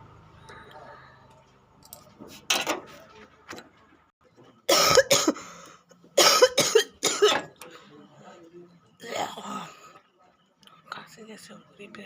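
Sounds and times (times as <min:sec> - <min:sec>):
woman coughing: 0:04.7 - 0:05.5, 0:06.2 - 0:07.5.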